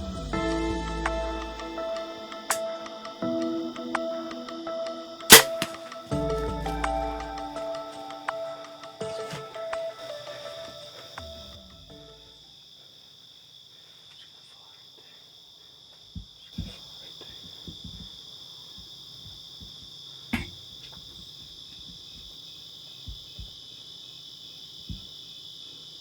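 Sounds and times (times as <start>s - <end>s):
crickets chirring: 1.7s - 26.0s
sharp thump: 5.3s - 5.9s.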